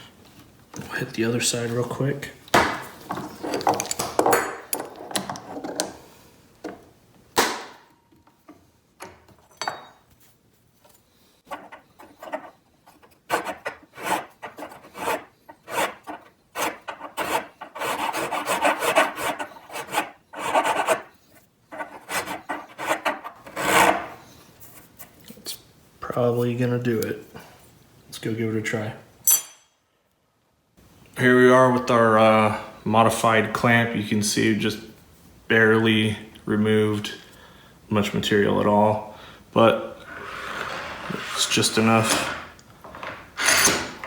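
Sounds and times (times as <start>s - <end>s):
hand file scraping metal: 11.5s - 21.1s, 21.7s - 24.2s, 43.4s - 44.0s.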